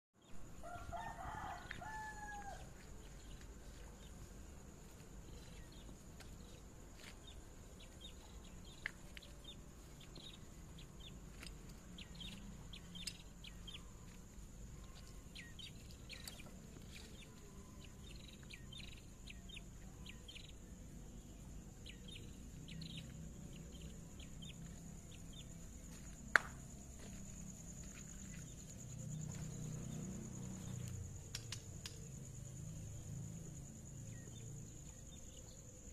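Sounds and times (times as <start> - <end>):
songbirds chirping: 0.2 - 35.9
rooster crowing: 0.5 - 2.9.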